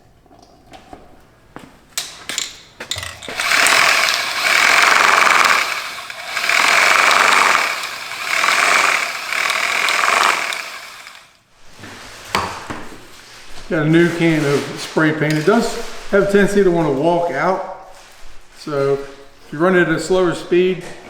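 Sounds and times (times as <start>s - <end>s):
reciprocating saw shaking a can: 3.3s - 11.3s.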